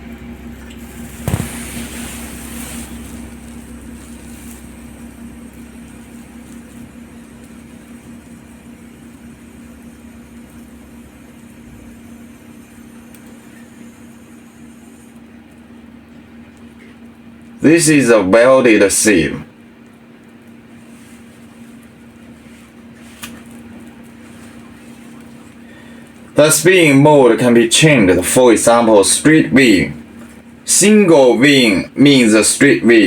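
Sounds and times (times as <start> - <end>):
welding machine hum: 0.0 - 17.5, 19.6 - 26.4
hiss: 0.8 - 3.4.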